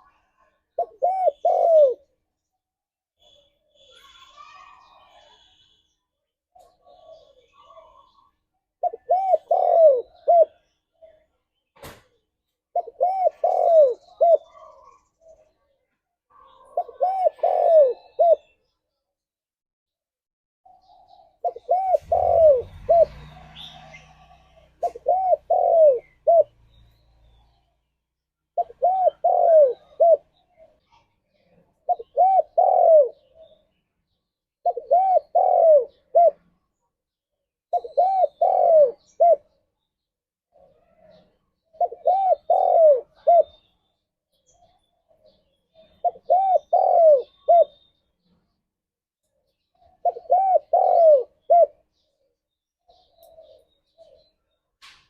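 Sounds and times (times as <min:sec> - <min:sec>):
dove cooing: 0:00.0 - 0:02.2, 0:06.6 - 0:11.2, 0:12.7 - 0:15.4, 0:16.3 - 0:18.6, 0:20.7 - 0:26.6, 0:28.6 - 0:30.9, 0:31.8 - 0:33.7, 0:34.6 - 0:36.5, 0:37.7 - 0:39.6, 0:40.5 - 0:43.7, 0:45.1 - 0:47.8, 0:49.6 - 0:54.4.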